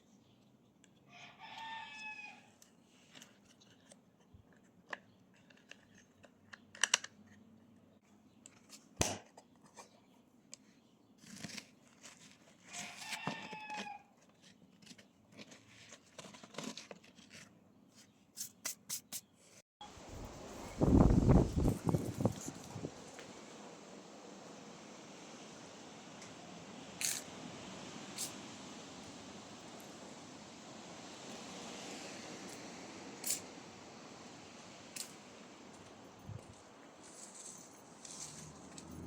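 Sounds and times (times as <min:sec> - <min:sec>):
rooster crowing: 0:01.1 - 0:02.6, 0:12.7 - 0:14.1
faint clicks and rustles: 0:34.9 - 0:39.0.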